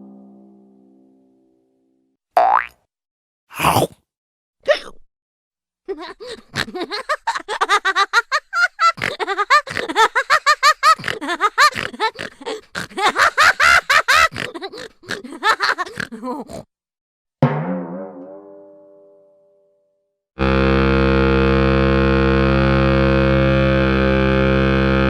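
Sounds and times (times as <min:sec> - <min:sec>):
twangy ringing note: 0:17.4 - 0:19.7.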